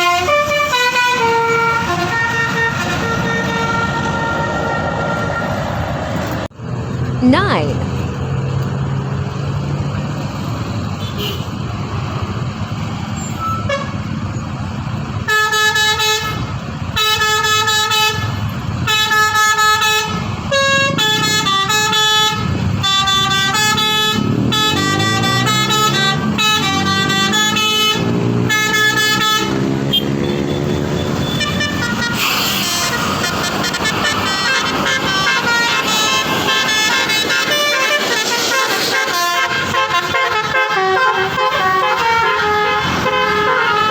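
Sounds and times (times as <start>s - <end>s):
multi-note bus air horn tune: 0.0s - 5.6s, 13.4s - 14.0s, 15.3s - 16.4s, 17.0s - 30.2s, 31.3s - 43.9s
bus engine running: 0.0s - 43.9s
street noise: 0.0s - 43.9s.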